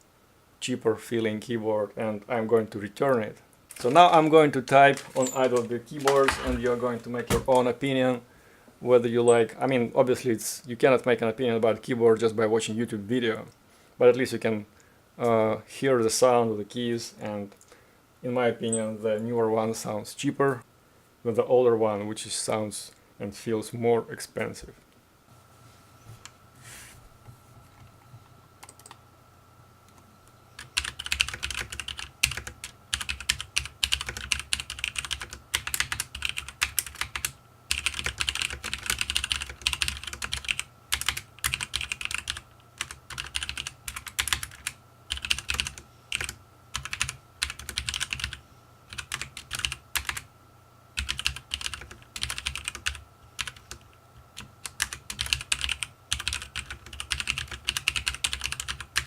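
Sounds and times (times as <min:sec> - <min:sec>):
mechanical keyboard typing: 0:28.6 - 0:29.0, 0:30.6 - 0:50.2, 0:51.0 - 0:53.8, 0:54.4 - 0:59.0.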